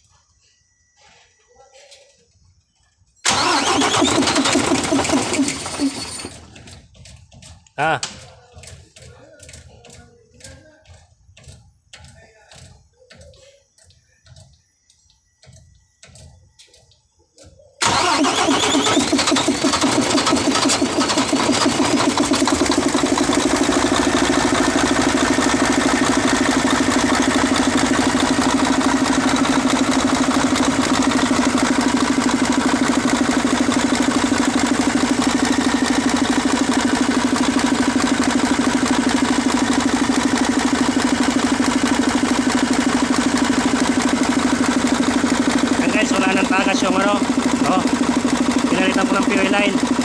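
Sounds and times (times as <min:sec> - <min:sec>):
diesel truck engine idling: 0:17.8 - 0:50.0.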